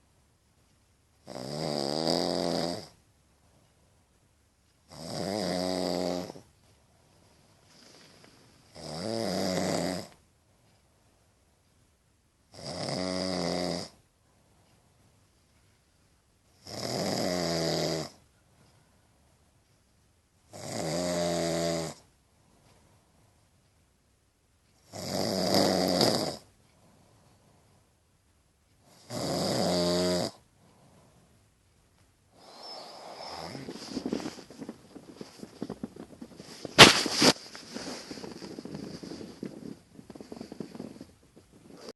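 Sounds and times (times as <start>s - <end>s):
rattling snores: 1.2s - 3.0s, 4.9s - 6.5s, 7.7s - 10.2s, 12.5s - 14.0s, 16.6s - 18.2s, 20.5s - 22.1s, 24.8s - 26.5s, 28.9s - 30.4s, 32.4s - 41.9s.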